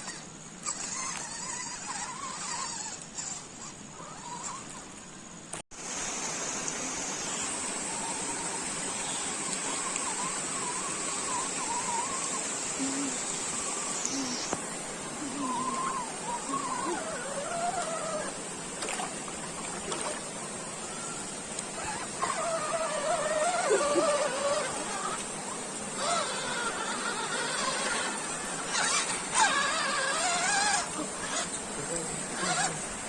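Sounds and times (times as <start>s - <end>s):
stream and waterfall rushing: 5.8s - 21.8s
high-pitched insect drone: 7.2s - 32.9s.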